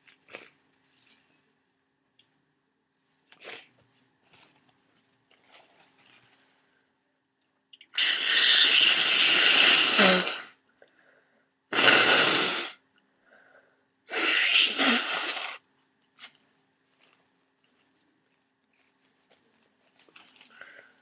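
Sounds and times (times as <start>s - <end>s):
forceful nose blowing: 8.0s - 10.5s, 11.7s - 12.8s, 14.1s - 15.6s.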